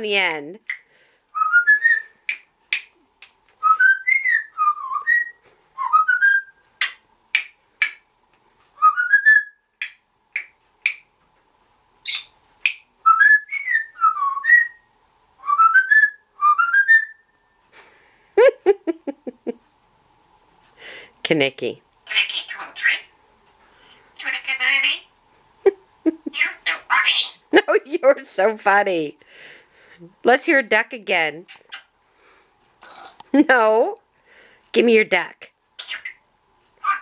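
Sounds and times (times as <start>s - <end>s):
parrot whistling a tune: 1.3s - 2.4s, 3.6s - 7.5s, 8.8s - 9.7s, 12.0s - 17.6s
parrot clicks: 2.3s - 3.4s, 6.8s - 8.0s, 9.8s - 11.1s.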